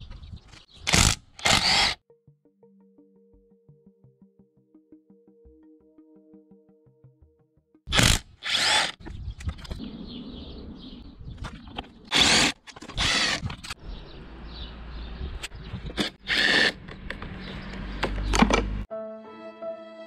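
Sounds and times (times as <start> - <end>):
power drill running in bursts: 0.9 - 2.0, 8.0 - 9.0, 12.1 - 13.4.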